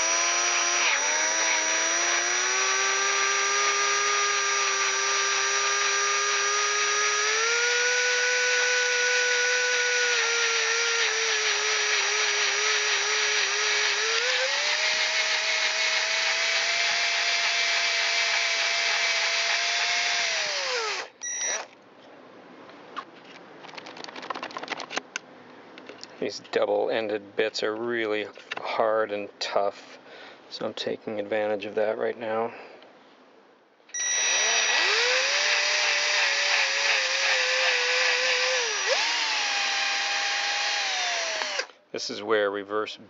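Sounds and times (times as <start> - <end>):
electric drill whining: 0.0 - 21.8, 33.9 - 41.8.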